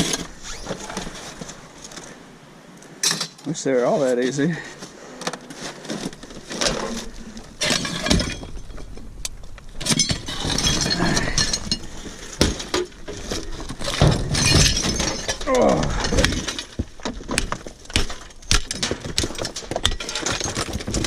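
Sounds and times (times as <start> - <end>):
loose fragments clinking: 6.2 - 17.1.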